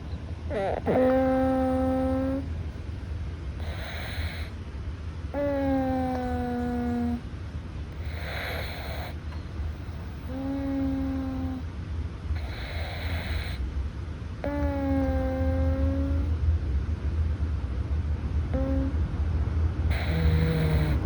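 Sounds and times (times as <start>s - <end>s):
cat snoring softly: 0.5s - 2.5s, 3.6s - 4.6s, 5.3s - 7.2s, 8.0s - 11.7s, 12.4s - 13.7s, 14.4s - 16.3s, 18.6s - 19.0s, 19.9s - 21.0s.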